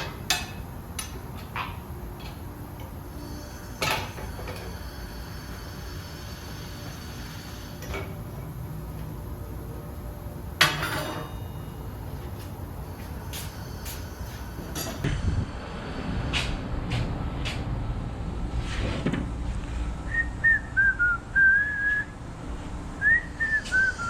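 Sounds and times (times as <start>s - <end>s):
person whistling a tune: 20.1s - 22.1s, 23.0s - 24.0s.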